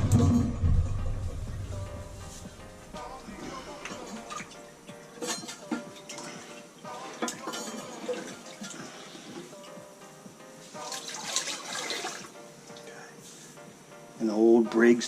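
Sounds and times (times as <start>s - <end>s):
background music: 0.0s - 15.0s
water running in toilet tank: 10.8s - 12.8s.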